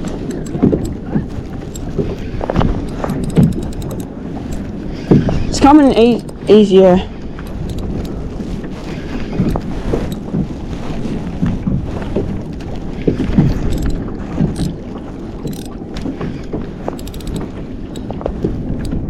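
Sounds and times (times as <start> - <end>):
light clicks: 0.0 - 4.7
water slapping against hull: 0.0 - 19.0
wind buffeting microphone: 0.0 - 19.0.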